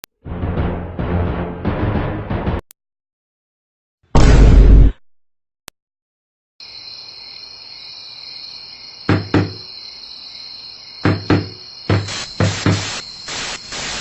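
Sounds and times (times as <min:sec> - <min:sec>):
crickets chirring: 0:06.6 - 0:14.0.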